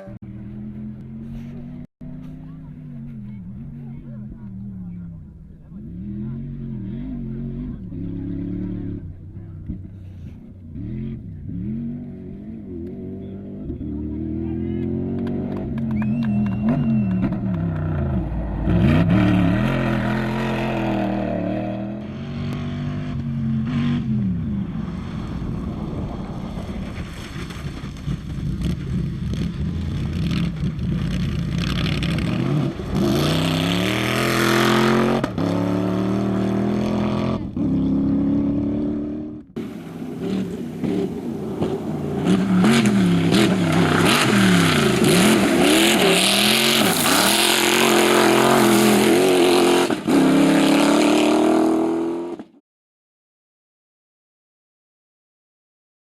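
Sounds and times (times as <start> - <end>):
rally car engine revving: 0.0 - 52.6
loud rushing noise: 39.6 - 50.8.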